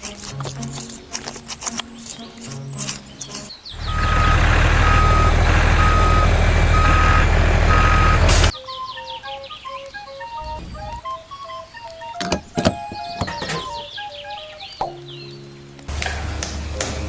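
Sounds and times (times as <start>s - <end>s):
background music: 0.0s - 3.6s, 7.7s - 17.0s
backup alarm beeping: 3.8s - 8.5s, 10.2s - 11.3s
heavy vehicle engine running: 3.8s - 8.5s.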